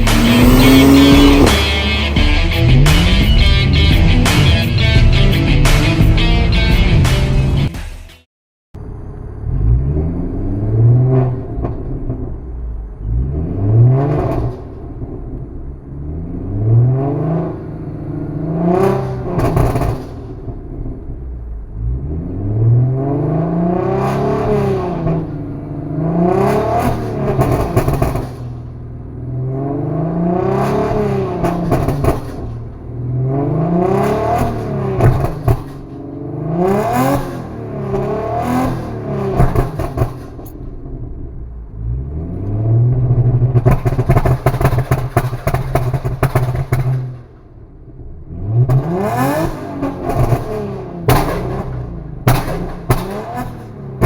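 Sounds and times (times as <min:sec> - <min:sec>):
exhaust crackles and pops: 0:00.0 - 0:01.6, 0:18.7 - 0:22.0, 0:26.4 - 0:29.5, 0:30.5 - 0:33.2, 0:33.8 - 0:54.0
car engine revving: 0:00.0 - 0:07.6, 0:08.8 - 0:54.0.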